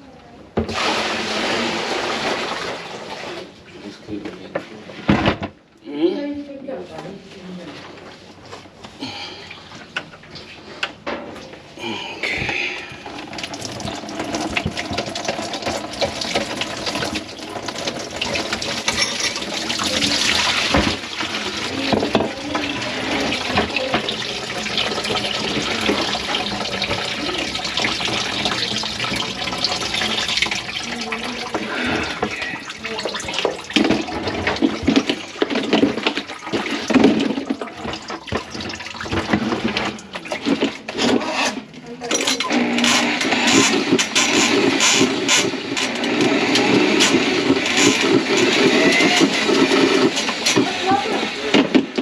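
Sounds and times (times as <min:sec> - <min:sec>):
water splashing in a sink: 0:00.6 - 0:03.6, 0:12.3 - 0:41.2, 0:43.5 - 0:52.0.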